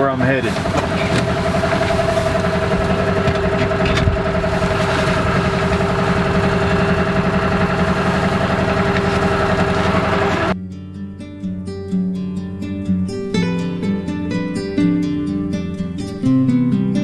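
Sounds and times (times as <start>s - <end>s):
vehicle engine low pulsing: 0.0s - 10.6s.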